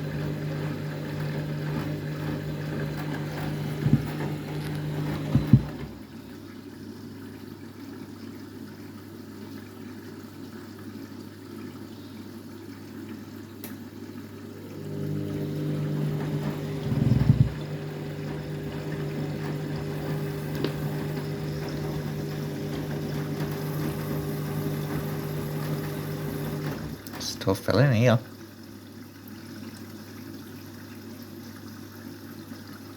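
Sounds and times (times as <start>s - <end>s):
louder machine hum: 0.0s - 6.0s, 14.5s - 27.0s
water running into washing machine: 0.0s - 32.9s.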